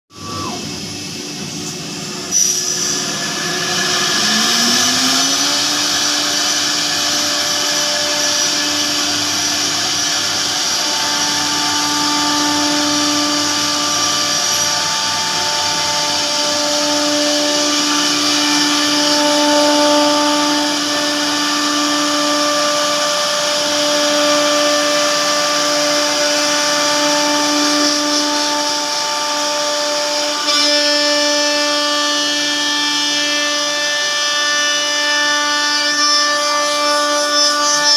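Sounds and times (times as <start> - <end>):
router spindle high whine: 0.1 - 37.9
hiss of cutting: 1.7 - 19.0.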